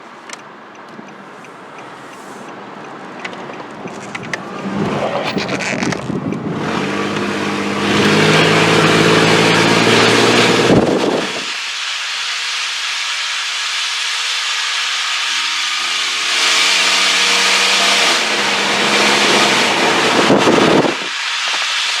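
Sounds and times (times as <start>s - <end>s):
rushing wind and road noise: 0.0s - 12.2s, 15.2s - 22.0s
truck engine accelerating: 1.0s - 11.6s, 14.7s - 21.9s.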